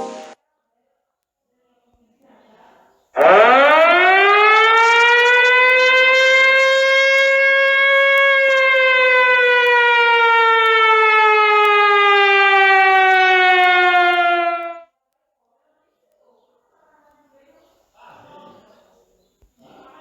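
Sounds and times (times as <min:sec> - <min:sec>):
siren wail: 0:03.2 - 0:14.9.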